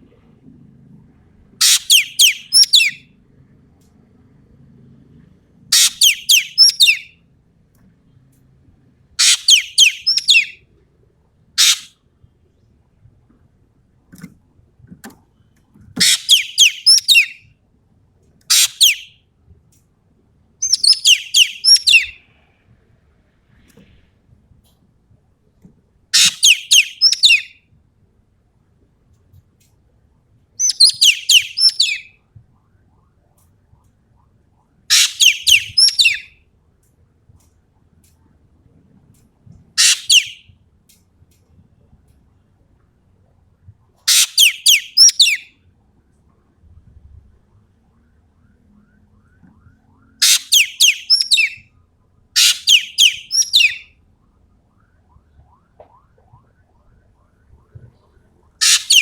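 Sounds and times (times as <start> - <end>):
bird harsh screeching: 1.6 - 3.0, 5.8 - 7.0, 9.2 - 10.5, 11.6 - 11.9, 16.0 - 17.4, 18.5 - 19.0, 26.2 - 27.5, 34.9 - 36.2, 39.8 - 40.4, 44.1 - 45.4, 50.2 - 51.6, 52.4 - 53.8, 58.6 - 59.0
magpie calling: 1.6 - 3.0, 5.7 - 7.1, 9.2 - 10.6, 11.6 - 11.9, 16.0 - 17.4, 18.5 - 19.1, 20.6 - 22.2, 26.2 - 27.5, 30.6 - 32.1, 34.9 - 36.3, 39.8 - 40.4, 44.1 - 45.5, 50.2 - 51.6, 52.4 - 53.9, 58.6 - 59.0.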